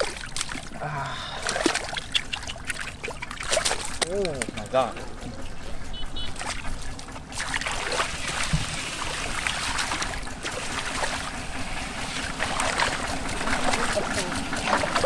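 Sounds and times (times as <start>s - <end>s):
water splashing in shallow water: 0.0s - 15.0s.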